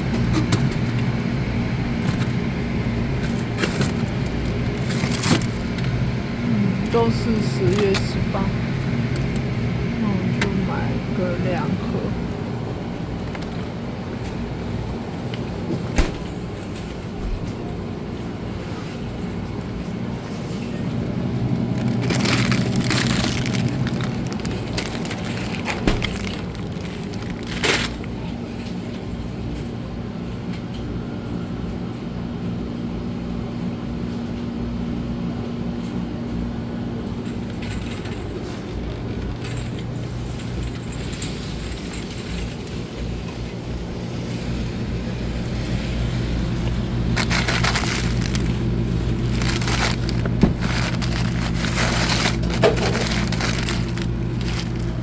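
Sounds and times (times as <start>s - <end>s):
supermarket background hum: 0.0s - 55.0s
rattling clatters: 49.2s - 55.0s.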